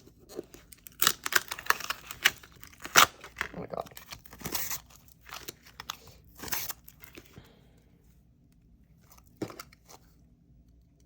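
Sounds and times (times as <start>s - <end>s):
packaging crinkling and rustling: 0.0s - 7.4s.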